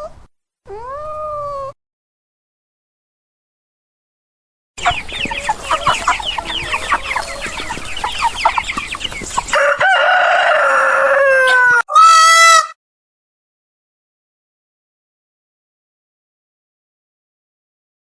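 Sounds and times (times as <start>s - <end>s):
chickens clucking and cackling: 4.8s - 12.6s
rooster crowing: 9.5s - 12.7s.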